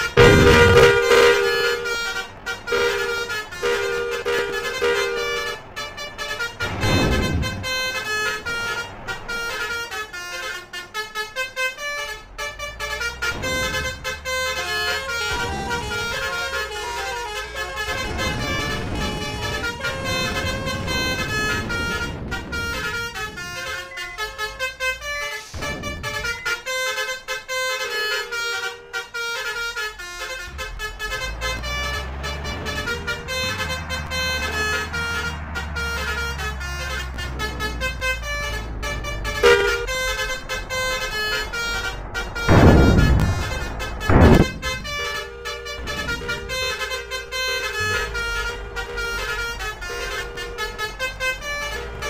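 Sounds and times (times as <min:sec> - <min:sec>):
bus engines running: 0:00.0 - 0:52.0
musical bus horns melody: 0:00.0 - 0:52.0
loud burst of sound: 0:42.4 - 0:45.1.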